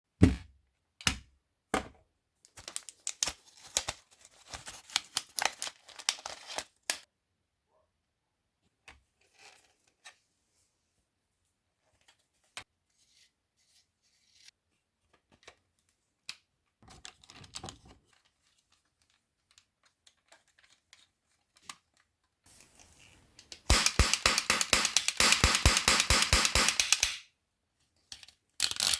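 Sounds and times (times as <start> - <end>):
toy gun handling clicks: 23.4 - 27.3, 28.6 - 28.9
cap gun pops: 23.7 - 27.2.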